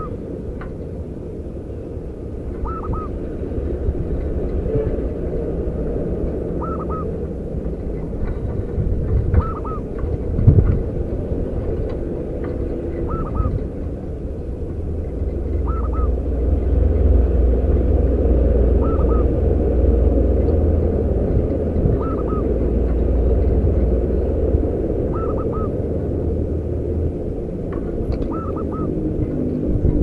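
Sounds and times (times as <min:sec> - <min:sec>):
steady low rumble: 0:00.0 - 0:30.0
dove cooing: 0:02.6 - 0:03.2, 0:06.5 - 0:07.2, 0:09.3 - 0:09.9, 0:12.9 - 0:13.7, 0:15.6 - 0:16.2, 0:18.7 - 0:19.5, 0:21.9 - 0:22.7, 0:25.1 - 0:25.8, 0:28.2 - 0:29.1.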